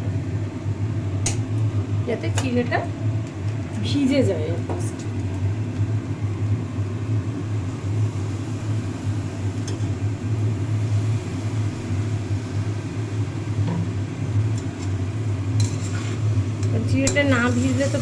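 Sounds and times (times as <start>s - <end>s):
low rumbling hum: 0.0s - 18.0s
utensils clicking against pan: 15.6s - 18.0s.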